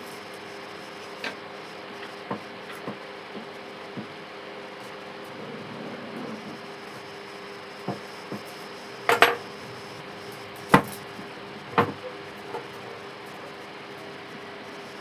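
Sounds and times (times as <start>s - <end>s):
metallic clanks and knocks: 9.1s - 9.6s.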